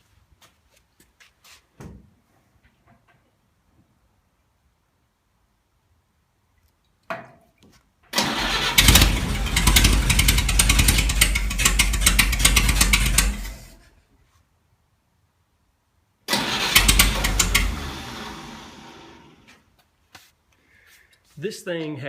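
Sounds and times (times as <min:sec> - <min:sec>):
vehicle engine starting and running: 0:08.1 - 0:13.9, 0:16.3 - 0:19.7.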